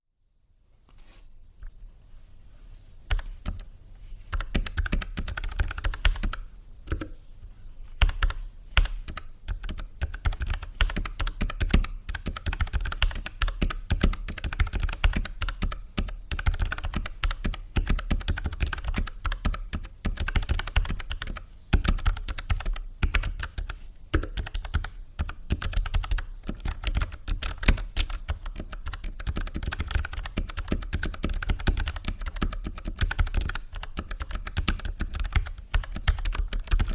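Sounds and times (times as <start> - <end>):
fast clicky keyboard typing: 4.3 - 7.2, 8.0 - 36.9.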